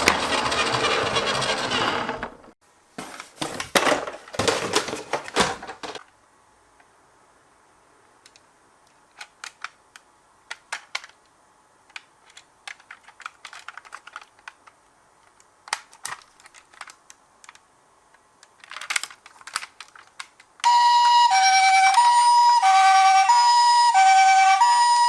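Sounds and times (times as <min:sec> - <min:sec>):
toy cars clicking and rattling: 0:08.3 - 0:11.2, 0:11.9 - 0:17.6, 0:18.4 - 0:20.7
toy ambulance two-tone siren: 0:20.6 - 0:25.0.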